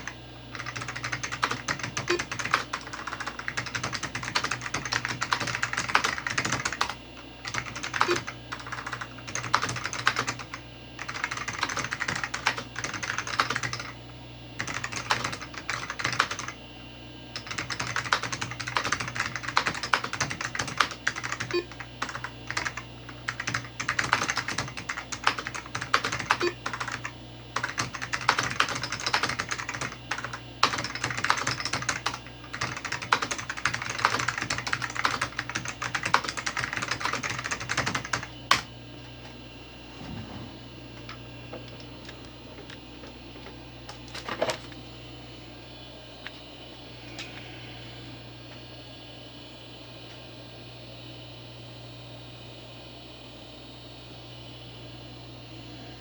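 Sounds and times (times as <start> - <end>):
clicky mechanical keyboard typing: 0.0 - 14.0, 14.6 - 16.6, 17.4 - 38.7, 43.9 - 44.8
steady low hum: 0.0 - 56.0.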